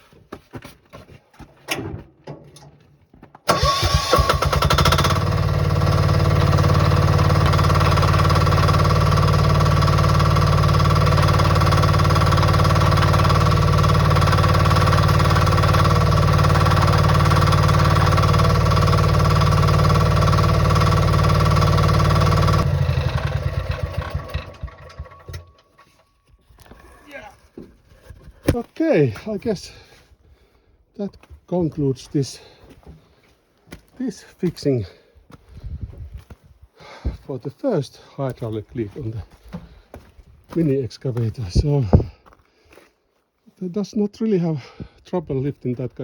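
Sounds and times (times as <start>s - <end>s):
excavator engine idling: 3.5s - 25.6s.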